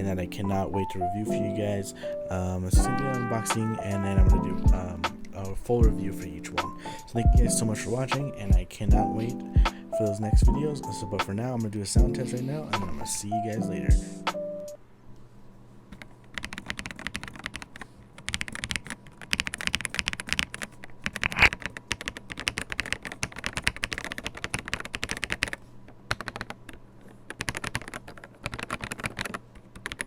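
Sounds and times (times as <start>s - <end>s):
mechanical keyboard typing: 16.0s - 30.0s.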